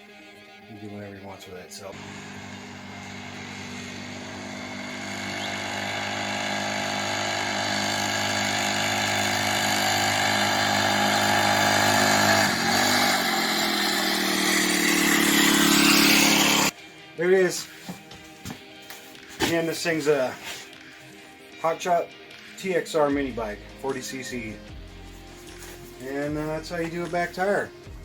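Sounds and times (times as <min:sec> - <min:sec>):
small four-stroke engine running: 0:01.9 - 0:16.8.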